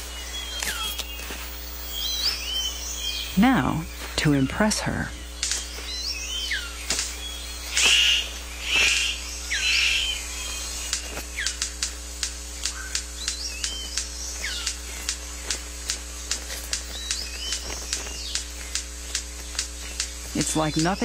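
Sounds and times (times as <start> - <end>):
birds whistling: 0.0 - 21.0
bird harsh rasping calls: 1.9 - 11.6, 12.6 - 15.7
bird sharp clicks: 5.2 - 21.0.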